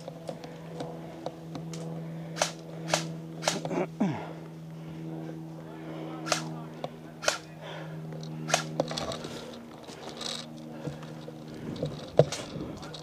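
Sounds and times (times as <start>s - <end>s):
steady low hum: 0.0s - 13.0s
sharp snaps: 1.7s - 3.7s, 6.3s - 6.6s, 7.2s - 7.5s, 8.5s - 8.8s.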